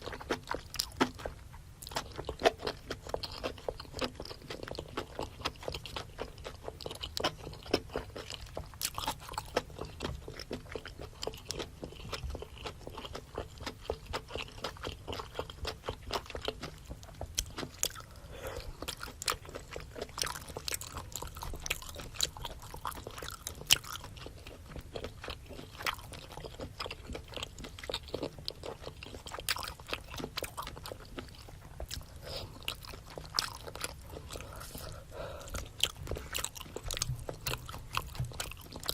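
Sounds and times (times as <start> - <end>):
wet chewing with crunches: 0.0 - 38.9.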